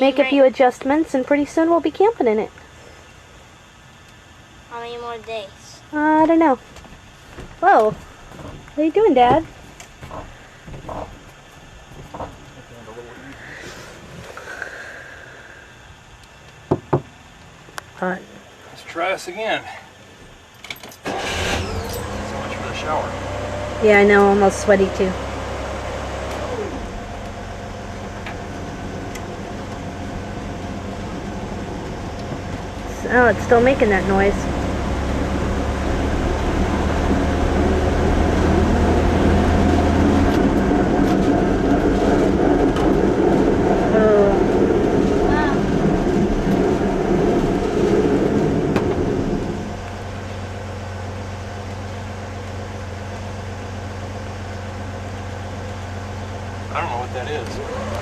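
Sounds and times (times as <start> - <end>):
brake drum grinding rumble: 5.9 - 18.1, 20.0 - 58.0
engine idling: 17.2 - 58.0.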